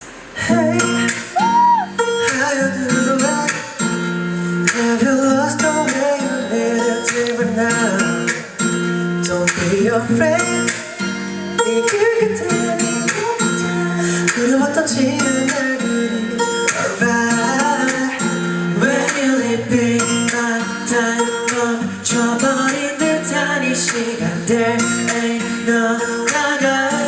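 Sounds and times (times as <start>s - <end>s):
strummed acoustic guitar: 0.0s - 27.0s.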